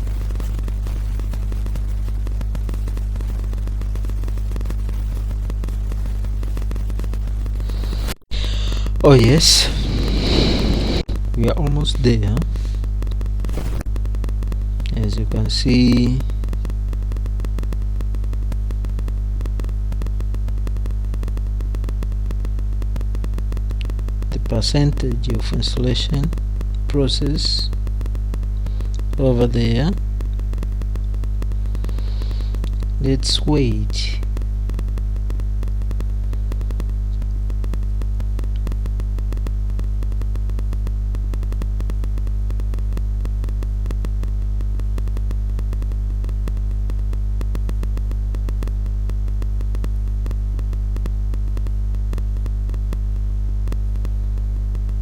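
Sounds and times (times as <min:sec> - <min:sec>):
crackling buzz of clicks: 0:00.0 - 0:09.0, 0:09.6 - 0:55.0
electrical mains hum: 0:00.0 - 0:55.0
faint crackle of ticks: 0:16.1 - 0:24.4.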